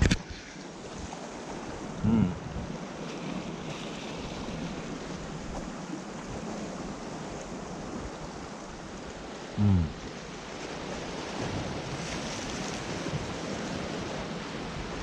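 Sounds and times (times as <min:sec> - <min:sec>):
surf washing against rocks: 0:00.0 - 0:15.0
person exclaiming: 0:02.0 - 0:02.4, 0:09.6 - 0:10.0.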